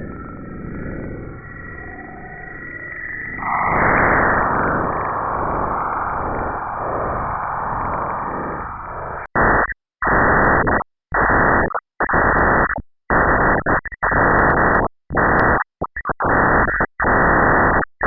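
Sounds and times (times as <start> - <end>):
hissing static bursts: 3.4 - 17.8.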